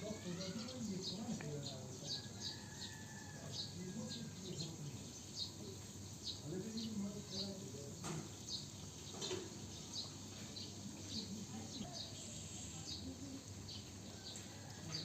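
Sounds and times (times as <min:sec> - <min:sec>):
bird chirping: 0:00.0 - 0:15.0
faint low voices: 0:00.0 - 0:15.0.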